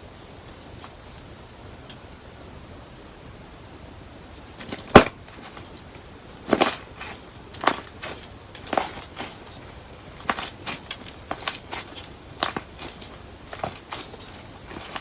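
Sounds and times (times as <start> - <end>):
crunchy slime being squeezed: 4.6 - 5.8, 6.4 - 15.0.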